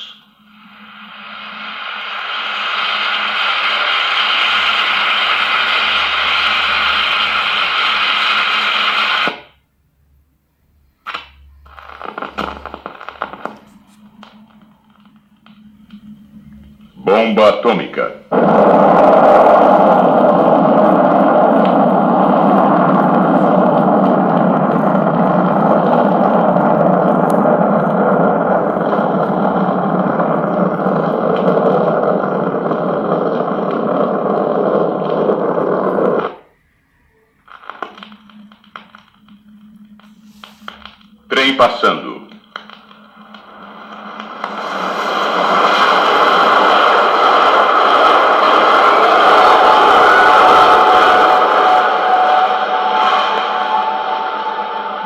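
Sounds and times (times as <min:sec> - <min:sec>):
dense steady noise: 0:00.0 - 0:55.0
orchestra tuning up: 0:48.0 - 0:55.0.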